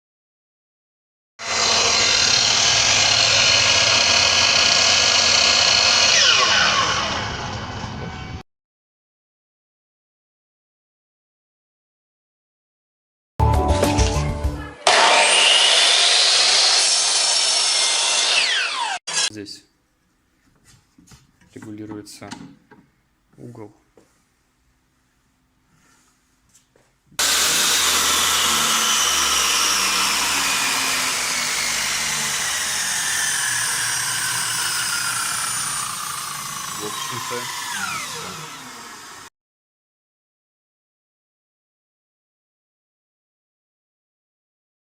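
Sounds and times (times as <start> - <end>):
motor winding down: 1.4 - 8.4, 14.8 - 19.3, 27.2 - 39.3
saw motor whining: 1.4 - 8.4, 14.8 - 19.3, 27.2 - 39.3.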